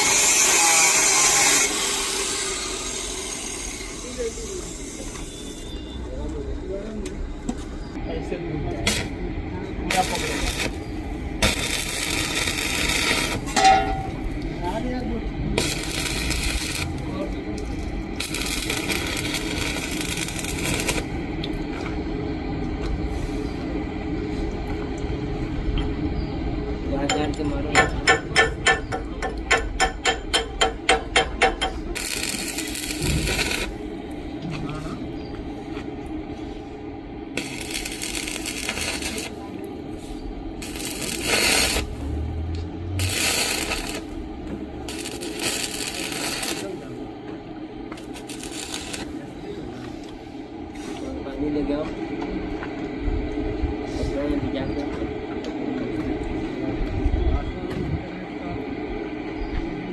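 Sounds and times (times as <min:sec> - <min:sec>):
electric arc welding crackling: 0:00.0 - 0:05.6, 0:08.7 - 0:21.3, 0:28.1 - 0:33.9, 0:37.3 - 0:39.6, 0:40.5 - 0:47.0, 0:48.0 - 0:49.2
mechanical drone: 0:00.0 - 0:49.4.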